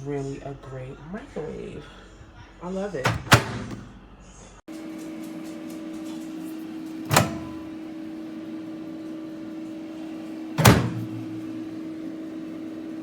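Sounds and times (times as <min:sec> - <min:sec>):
microwave oven humming: 0:04.7 - 0:13.0.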